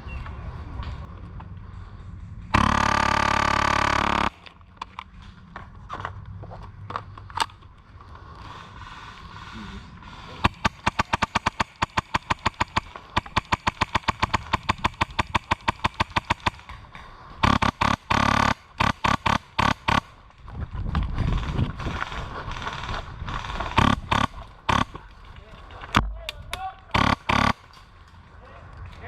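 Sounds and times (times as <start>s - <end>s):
low rumbling noise: 0.0s - 29.0s
airsoft guns firing rapidly: 2.6s - 4.4s, 10.4s - 16.7s, 17.4s - 20.2s, 22.6s - 25.0s, 26.9s - 27.7s.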